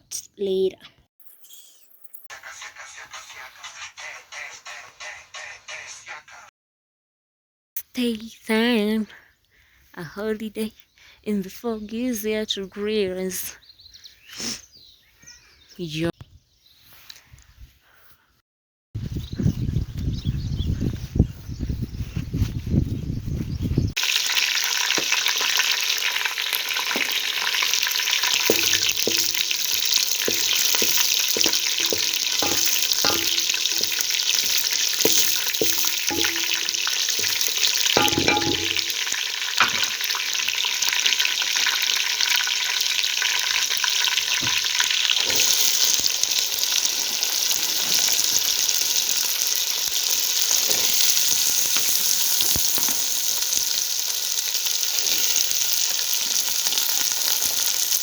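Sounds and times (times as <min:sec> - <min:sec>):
food sizzling in a pan: 0:23.9 - 0:58.0
spoon knocking against a pan: 0:28.2 - 0:40.0.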